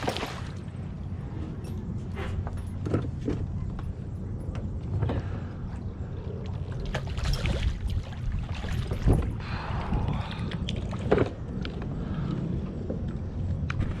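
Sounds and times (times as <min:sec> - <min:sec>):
water splashing around kayak: 0:00.0 - 0:00.9, 0:06.4 - 0:09.6
steady low rumble: 0:00.0 - 0:14.0.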